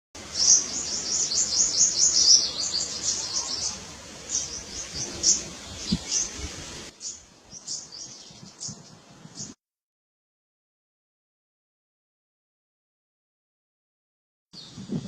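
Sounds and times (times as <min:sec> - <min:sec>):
small birds chirping: 0:00.2 - 0:09.6, 0:14.6 - 0:15.0.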